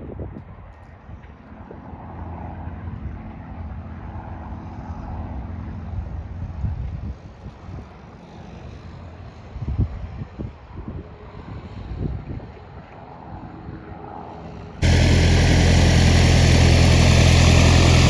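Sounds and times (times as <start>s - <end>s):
propeller airplane engine passing: 14.8s - 18.0s.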